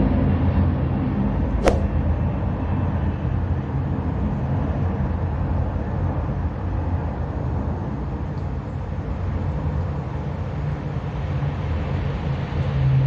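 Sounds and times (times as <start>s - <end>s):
sharp click: 1.6s - 1.9s.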